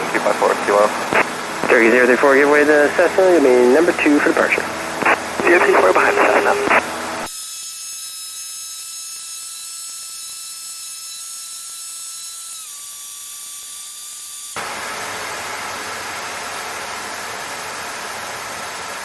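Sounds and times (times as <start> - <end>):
engine and cabin noise: 0.0 - 7.3
high-pitched headset whine: 0.1 - 7.4.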